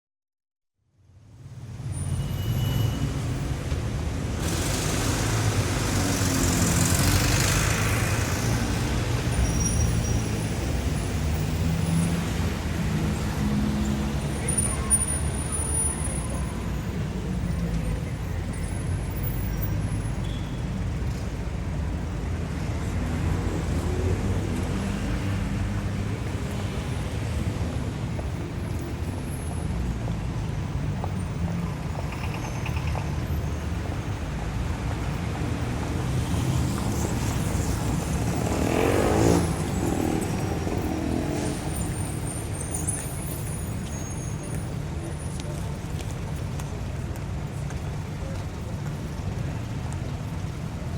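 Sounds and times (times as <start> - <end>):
city traffic rumble: 0.9 - 50.9
vehicle passing close by: 4.4 - 9.3, 36.1 - 42.2.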